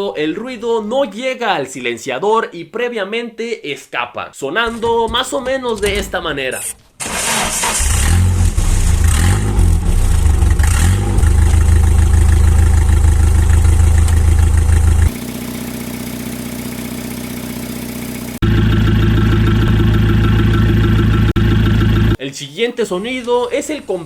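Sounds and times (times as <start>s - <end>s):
loud car engine revving: 7.0s - 22.2s.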